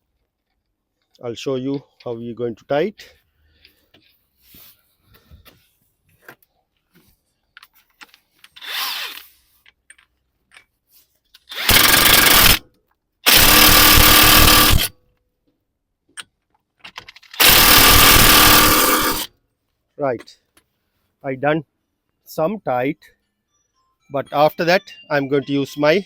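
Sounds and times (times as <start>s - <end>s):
cordless power tool running: 11.5s - 12.6s, 13.3s - 14.9s, 17.4s - 19.3s.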